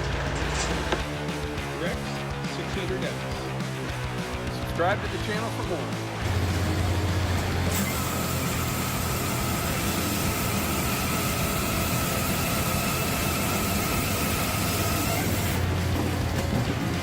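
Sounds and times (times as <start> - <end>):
machine running steadily: 6.1 - 17.0.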